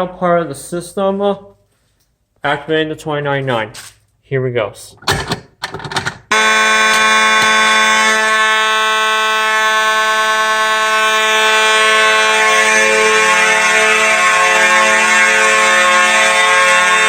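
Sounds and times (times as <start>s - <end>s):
buzzy fire alarm horns: 6.3s - 17.0s.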